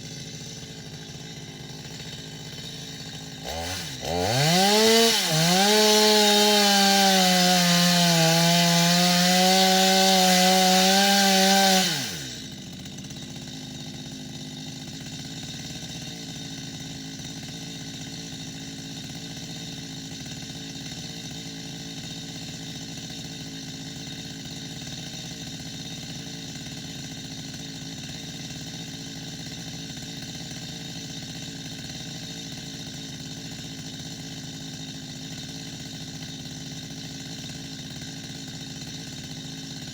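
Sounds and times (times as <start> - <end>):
chainsaw running and idling: 0.0 - 39.9.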